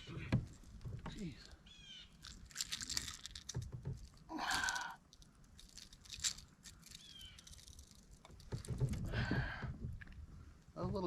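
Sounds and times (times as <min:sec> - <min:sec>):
fishing gear handling clicks: 0:02.2 - 0:09.1.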